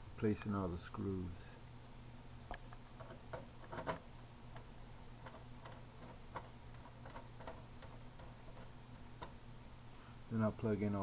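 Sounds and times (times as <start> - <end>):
faint low hum: 0.0 - 11.0
screwdriver clicking on plastic: 2.5 - 9.4.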